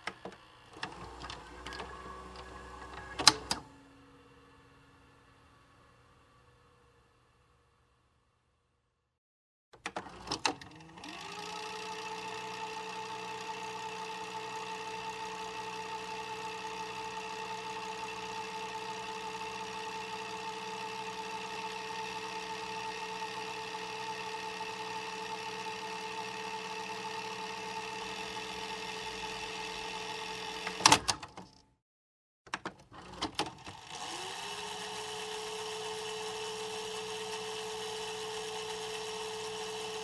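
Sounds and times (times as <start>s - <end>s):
tape mechanism clicks: 0.0s - 3.7s.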